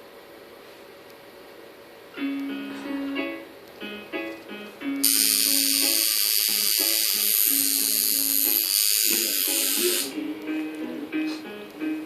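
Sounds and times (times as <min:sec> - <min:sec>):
tattoo machine buzzing: 0:05.0 - 0:10.2.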